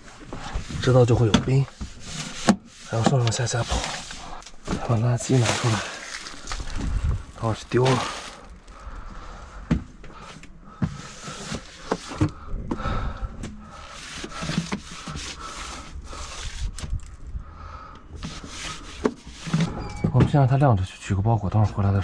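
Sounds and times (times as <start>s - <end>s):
cloth scrubbing floor: 1.7s - 6.5s, 7.4s - 8.6s, 13.7s - 16.7s, 18.2s - 19.7s
shuffling footsteps: 2.9s - 8.9s.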